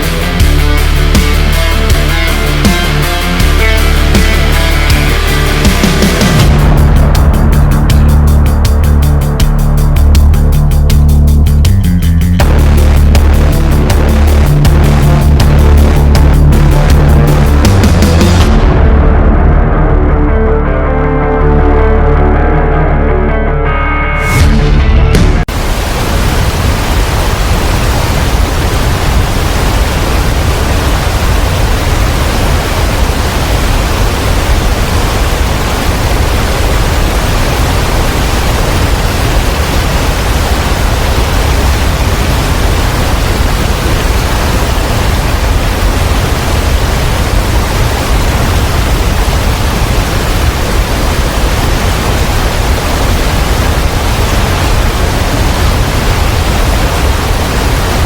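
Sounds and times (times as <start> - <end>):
waterfall rushing: 0.0 - 6.8, 25.5 - 58.0.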